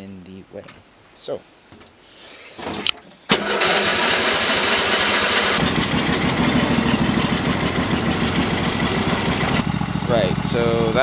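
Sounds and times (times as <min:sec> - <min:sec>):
vehicle engine starting: 0:02.6 - 0:11.0.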